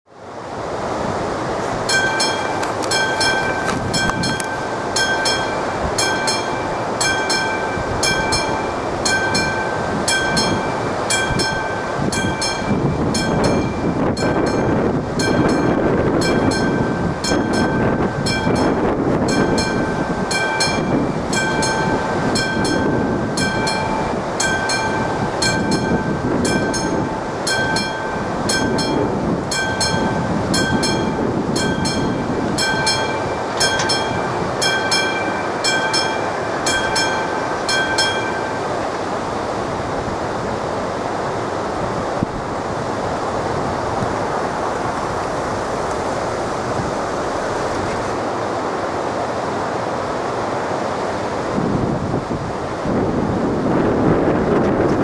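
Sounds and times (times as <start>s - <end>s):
train wheels on rails: 0.6s - 51.2s
level crossing warning bell: 1.8s - 39.5s.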